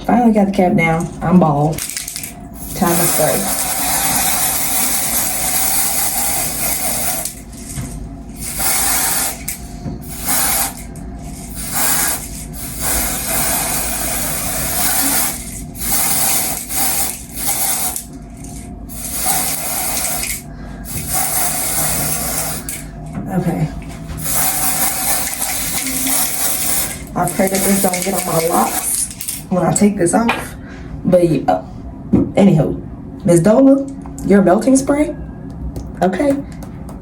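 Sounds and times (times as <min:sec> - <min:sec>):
spray hissing in bursts: 0:02.6 - 0:07.4, 0:08.4 - 0:10.8, 0:11.5 - 0:18.0, 0:18.9 - 0:22.8, 0:24.2 - 0:29.0.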